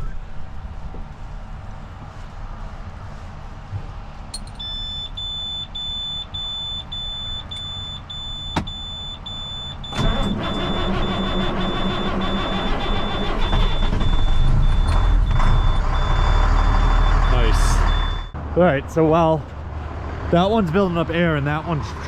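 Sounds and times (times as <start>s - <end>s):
truck engine running: 0.3s - 22.0s
high warning beep: 4.4s - 18.4s.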